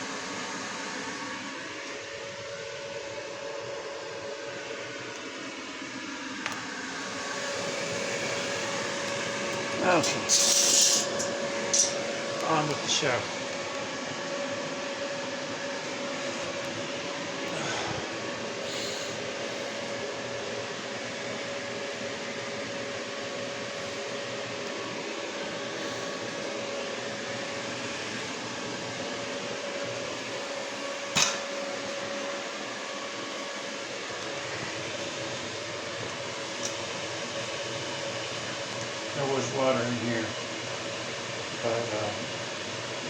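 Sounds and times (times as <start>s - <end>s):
electric blower motor whirring: 0.0s - 43.0s.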